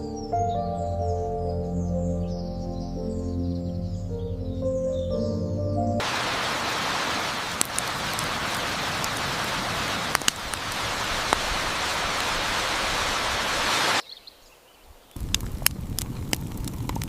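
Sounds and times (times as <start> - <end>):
waterfall rushing: 6.0 - 14.0.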